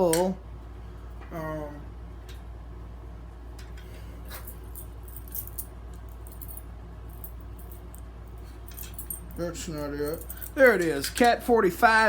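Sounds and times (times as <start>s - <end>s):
keys jangling: 4.2s - 11.3s.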